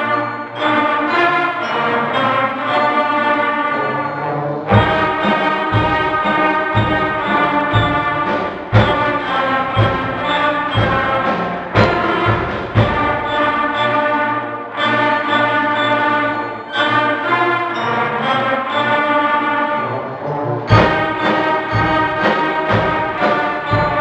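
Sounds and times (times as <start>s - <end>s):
school band playing chords: 0.0s - 24.0s
low drum beat: 4.7s - 13.3s.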